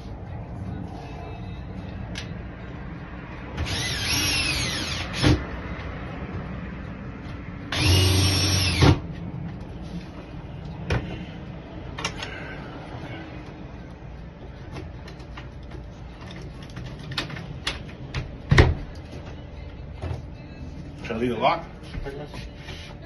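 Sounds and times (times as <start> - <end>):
small power tool whirring: 3.6 - 5.4, 7.7 - 9.0.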